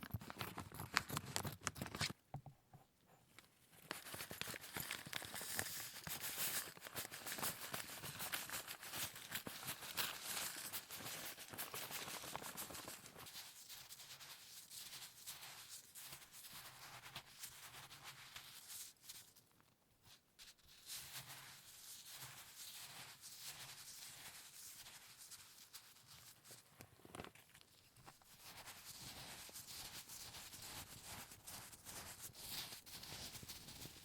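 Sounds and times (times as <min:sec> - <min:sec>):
hands rustling food and utensils: 0:00.0 - 0:02.2, 0:03.4 - 0:14.4.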